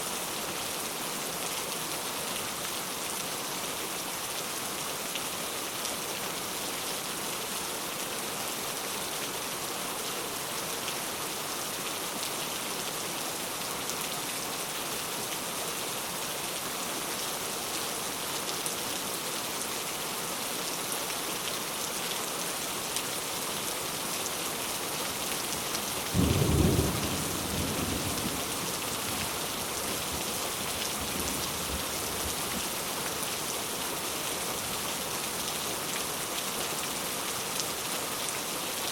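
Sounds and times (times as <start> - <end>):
heavy rain: 0.0 - 38.9.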